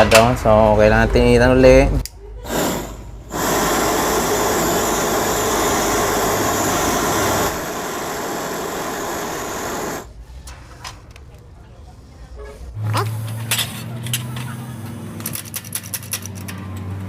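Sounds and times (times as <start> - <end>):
heating tool rushing hiss: 2.4 - 10.1.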